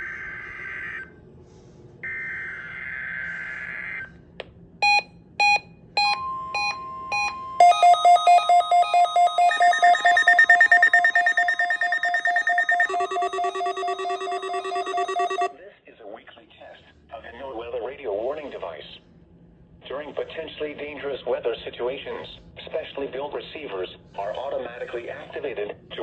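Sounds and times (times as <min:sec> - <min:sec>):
electronic beeps: 0:04.8 - 0:15.6
pulsing electronic alert tone: 0:06.1 - 0:15.5
raspy digital data burst: 0:09.4 - 0:15.5.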